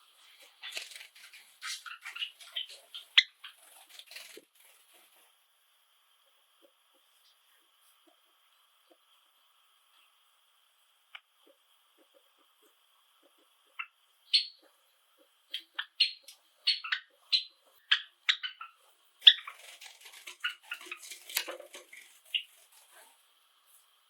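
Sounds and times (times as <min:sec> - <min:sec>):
sparrows chirping: 0:00.0 - 0:04.4, 0:13.6 - 0:23.2.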